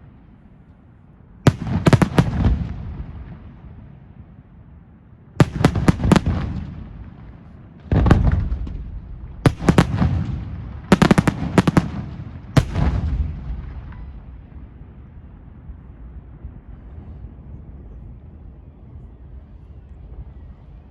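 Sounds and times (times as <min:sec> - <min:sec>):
fireworks bangs: 0:01.5 - 0:03.7, 0:05.4 - 0:14.7
rumbling echo: 0:05.4 - 0:18.4
heavy firework boom: 0:07.9 - 0:14.5.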